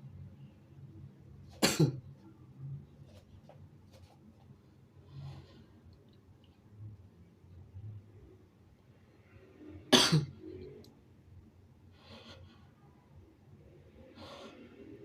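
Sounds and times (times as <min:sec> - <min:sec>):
breathing: 0:05.0 - 0:05.9, 0:11.9 - 0:12.8, 0:14.0 - 0:15.0.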